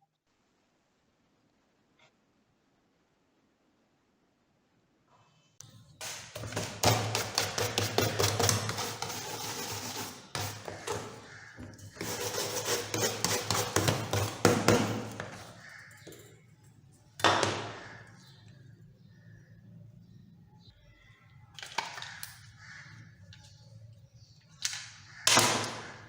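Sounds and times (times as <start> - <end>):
hand tool rasping on workpiece: 6.0 - 11.2, 11.9 - 15.2.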